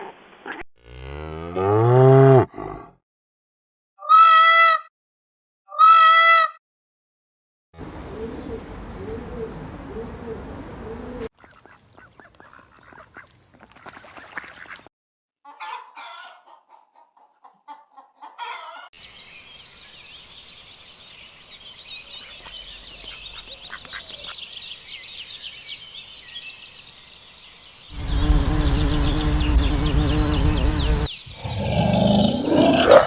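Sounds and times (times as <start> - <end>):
chickens clucking: 15.5 - 18.8.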